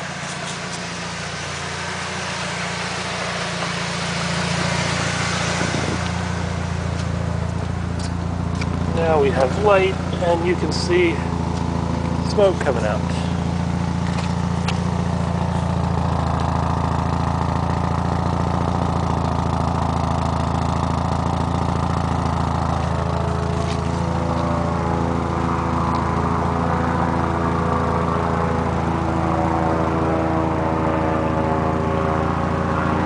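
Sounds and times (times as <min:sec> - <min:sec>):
car engine idling: 0:00.0 - 0:33.0.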